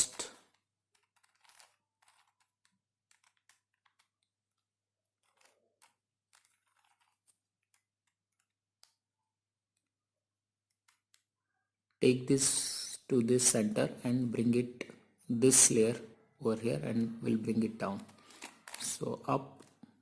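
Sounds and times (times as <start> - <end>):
plastic puzzle clicks: 0.0 - 4.6, 5.2 - 9.8, 18.0 - 19.9.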